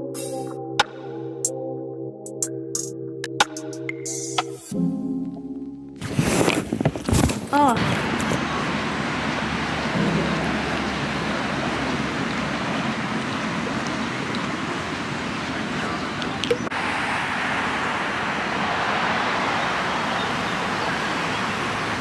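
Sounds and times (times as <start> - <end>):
road traffic passing: 6.0 - 22.0
background hiss: 7.7 - 22.0.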